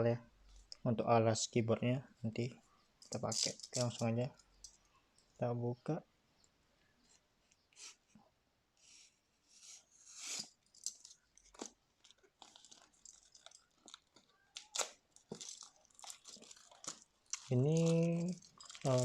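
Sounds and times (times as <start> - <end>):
packaging rustling and crinkling: 10.6 - 19.0.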